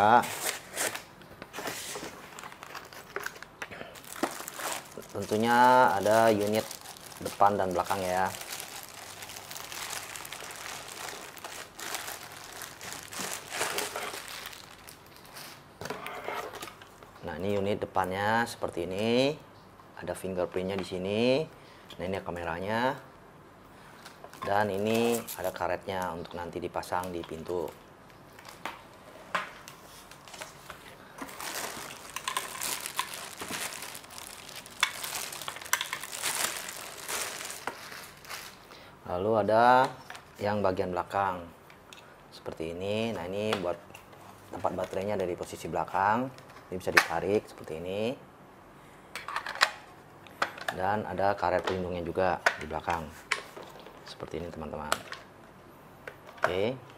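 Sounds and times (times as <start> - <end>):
packaging crinkling: 0.0 - 15.7, 24.7 - 25.6, 29.8 - 38.8.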